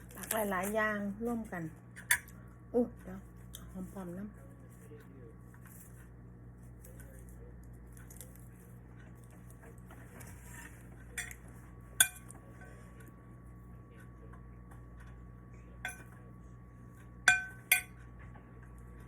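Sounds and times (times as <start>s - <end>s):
cutlery clinking on a plate: 10.6s - 11.4s, 12.0s - 12.7s, 15.8s - 16.2s, 17.3s - 18.0s.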